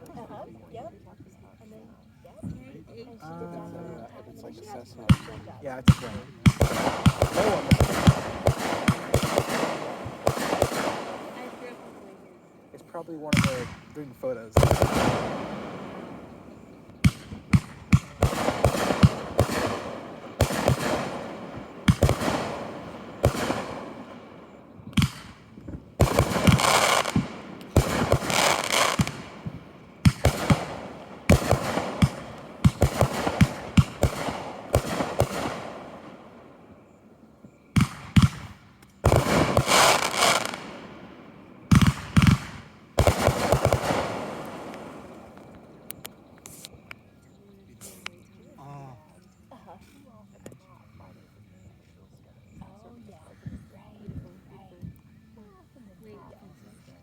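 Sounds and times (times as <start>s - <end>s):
firework hiss and crackle: 4.6s - 48.3s
firework bangs: 5.0s - 47.0s.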